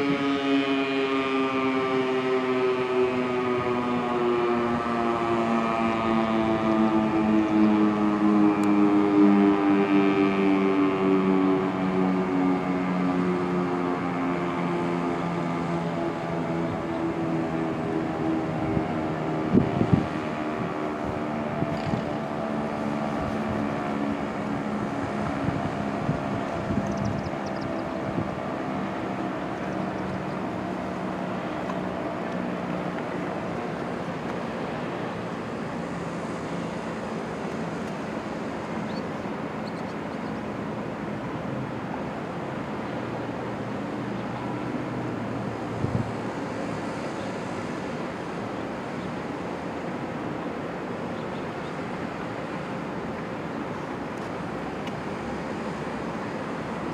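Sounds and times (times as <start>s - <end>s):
warning siren winding down: 0.0s - 39.8s
traffic noise: 0.0s - 56.9s
wind: 0.0s - 56.9s.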